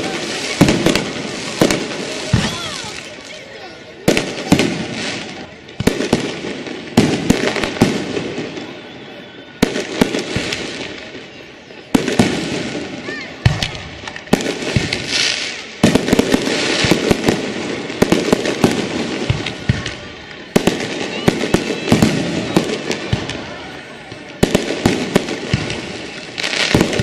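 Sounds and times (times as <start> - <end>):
fireworks bangs: 0.0 - 27.0
fireworks bangs with crackling: 0.0 - 27.0.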